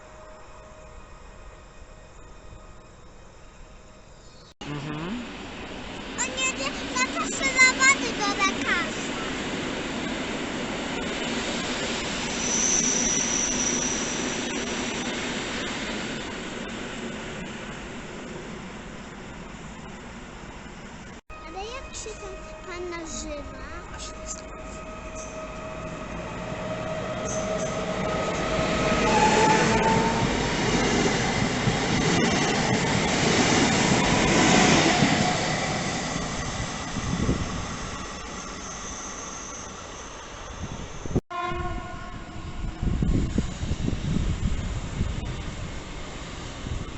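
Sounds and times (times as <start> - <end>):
train wheels rumbling on rails: 6.0 - 41.2.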